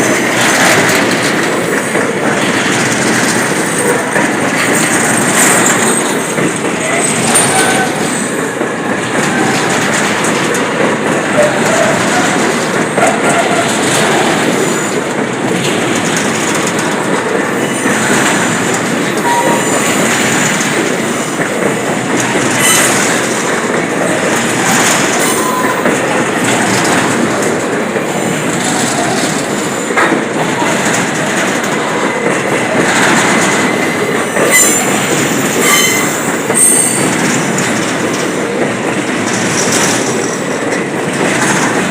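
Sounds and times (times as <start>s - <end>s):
train wheels rumbling on rails: 0.0s - 41.9s
wheels clacking over rail joints: 0.0s - 41.9s
wheel squeals: 19.2s - 20.0s, 22.6s - 23.0s, 25.2s - 25.9s, 34.4s - 37.2s.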